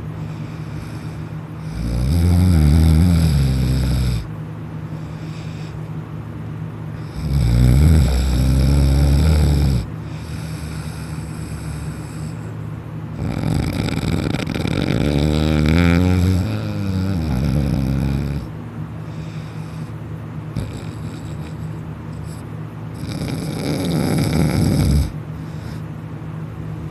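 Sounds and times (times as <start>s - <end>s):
steady background hum: 0.0s - 26.9s
person snoring loudly: 0.4s - 4.3s, 7.0s - 12.5s, 13.2s - 18.5s, 20.6s - 25.8s.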